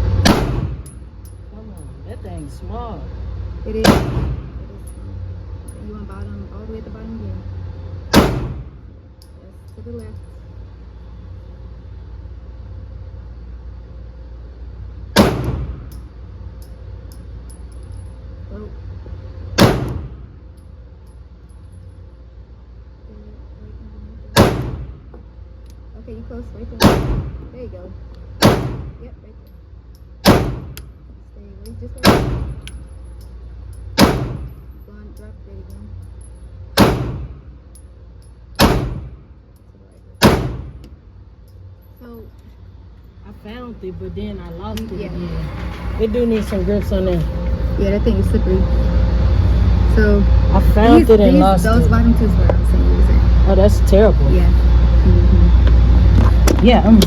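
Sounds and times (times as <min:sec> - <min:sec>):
pistol shot with echo: 0:00.2 - 0:00.8, 0:03.8 - 0:04.5, 0:08.1 - 0:08.7, 0:15.2 - 0:15.8, 0:19.6 - 0:20.2, 0:24.4 - 0:24.9, 0:26.8 - 0:27.4, 0:28.4 - 0:28.9, 0:30.2 - 0:30.8, 0:32.0 - 0:32.6, 0:34.0 - 0:34.5, 0:36.8 - 0:37.4, 0:38.6 - 0:39.2, 0:40.2 - 0:40.8.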